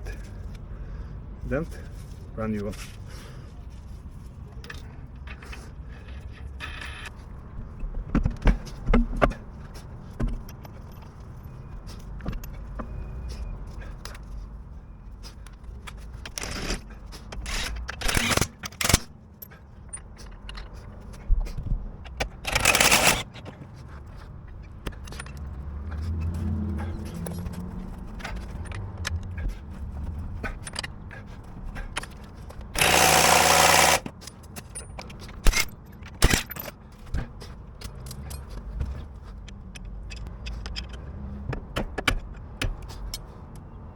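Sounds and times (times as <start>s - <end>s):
tools and metal parts clinking: 7.7s - 14.4s, 15.4s - 41.1s.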